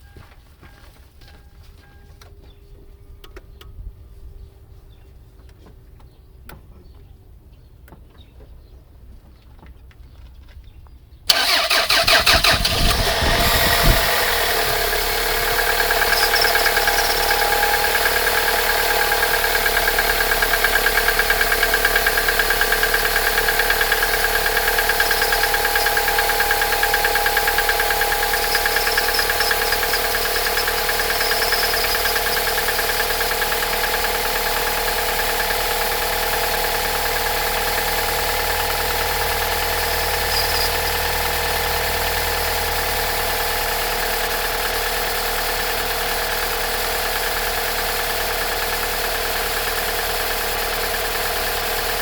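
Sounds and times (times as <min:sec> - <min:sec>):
car engine running: 0:11.3 - 0:52.0.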